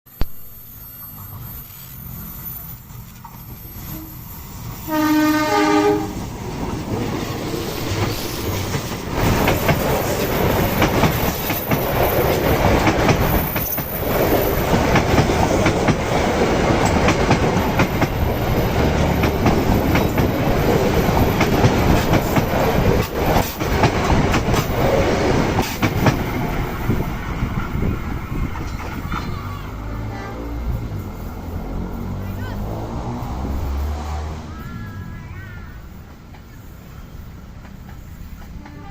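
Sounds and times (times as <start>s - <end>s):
passing train rumble: 0.1s - 38.9s
train horn: 3.8s - 6.2s, 29.9s - 30.8s, 38.5s - 38.9s.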